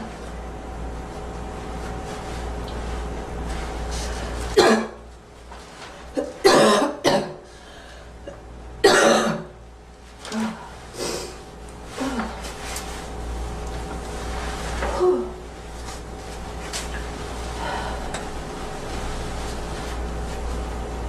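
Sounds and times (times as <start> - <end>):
girl coughing: 4.6 - 5.0, 6.2 - 7.4, 8.8 - 9.5.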